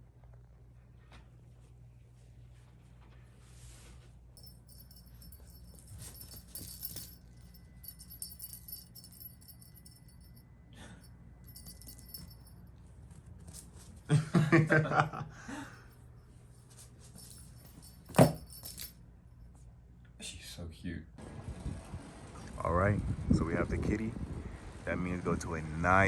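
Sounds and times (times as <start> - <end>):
light metallic jingling: 4.4 - 13.8, 15.8 - 19.6.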